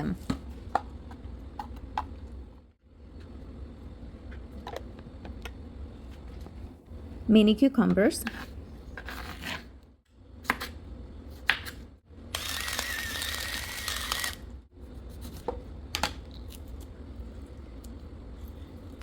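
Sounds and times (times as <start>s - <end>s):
small motor whirring: 12.3s - 14.4s.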